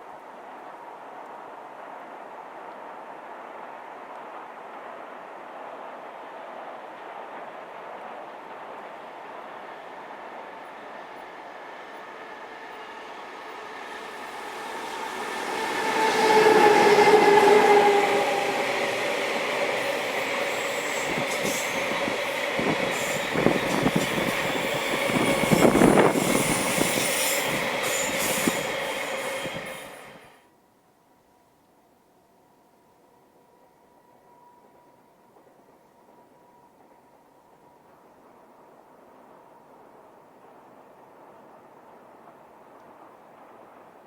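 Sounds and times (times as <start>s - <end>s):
electric locomotive whine: 0.0s - 30.6s, 32.1s - 44.0s
train wheels clattering over rail joints: 18.4s - 30.1s.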